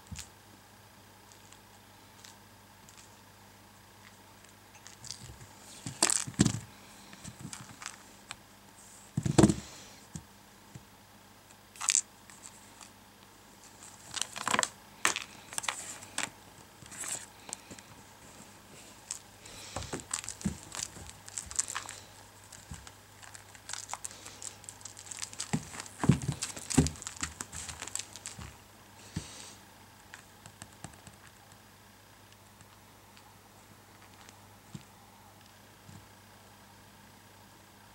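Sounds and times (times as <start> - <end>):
cat scratching and rustling: 19.0 - 28.6.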